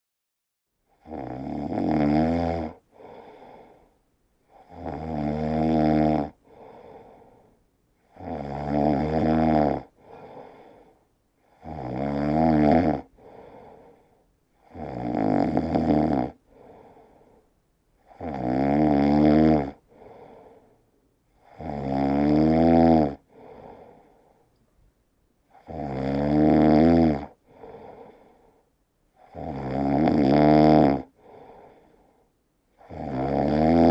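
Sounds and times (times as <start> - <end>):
person snoring loudly: 0.9 - 3.8, 4.5 - 7.4, 8.0 - 14.0, 14.6 - 17.4, 18.0 - 20.6, 21.4 - 24.2, 25.5 - 28.6, 29.2 - 32.1, 32.7 - 33.9
soft breath: 2.8 - 4.7, 6.4 - 8.1, 9.9 - 11.6, 13.1 - 14.7, 16.4 - 18.2, 19.8 - 21.6, 23.2 - 24.8, 27.3 - 29.3, 31.1 - 32.8.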